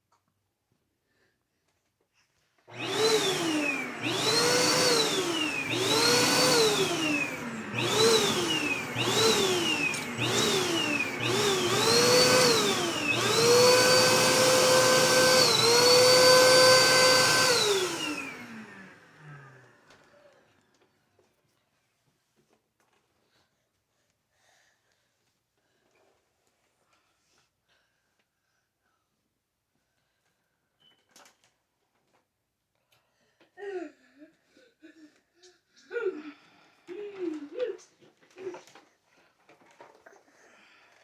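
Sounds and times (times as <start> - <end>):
vacuum cleaner motor whine: 2.7 - 21.0.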